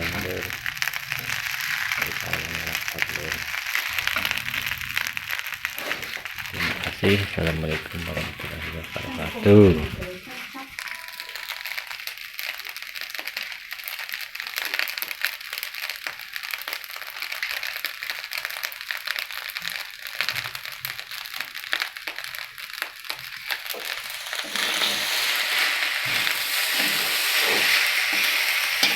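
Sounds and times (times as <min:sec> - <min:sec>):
rice frying in hot oil: 0:00.0 - 0:28.9.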